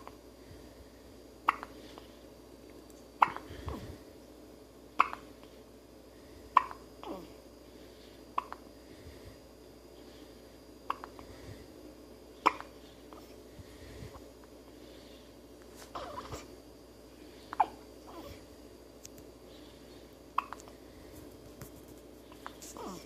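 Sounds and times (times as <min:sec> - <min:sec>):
baby hiccuping: 0:01.5 - 0:01.7, 0:03.2 - 0:03.4, 0:05.0 - 0:05.3, 0:12.4 - 0:12.7.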